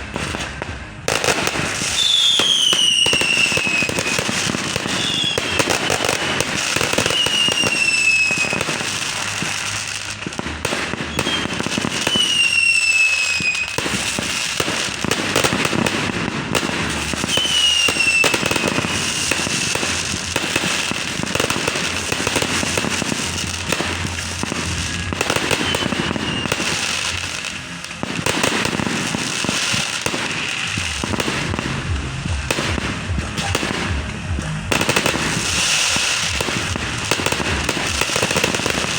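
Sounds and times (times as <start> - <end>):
fireworks popping and crackling: 0.0 - 38.9
whistling firework shells: 1.2 - 10.2, 10.8 - 31.4.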